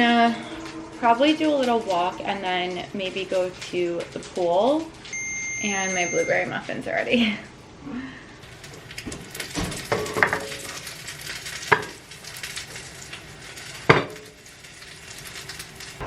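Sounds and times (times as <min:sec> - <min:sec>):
fish sizzling in a frying pan: 0:00.0 - 0:07.2, 0:08.4 - 0:16.0
utensils clinking on pan: 0:08.9 - 0:16.0.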